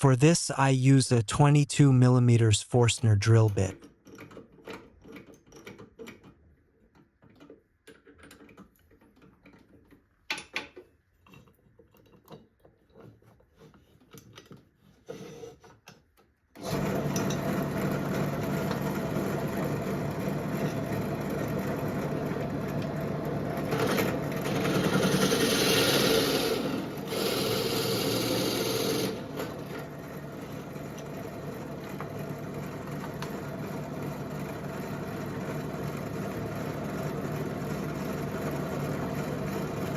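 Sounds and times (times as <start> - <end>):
electric drill boring wood: 23.5 - 34.7.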